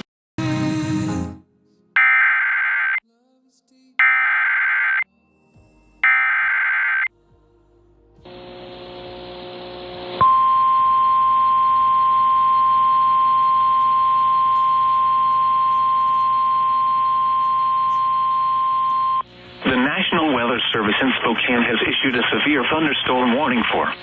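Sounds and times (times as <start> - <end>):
steady alarm tone: 2.0 - 3.0, 4.0 - 5.0, 6.0 - 7.1, 8.3 - 20.5
radio hiss with faint hum: 8.3 - 24.0.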